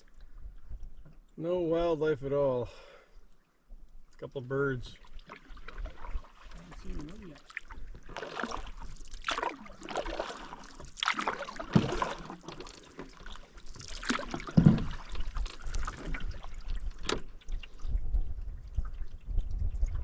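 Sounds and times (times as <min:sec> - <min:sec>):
canoe paddle splashing in water: 0:05.0 - 0:18.0.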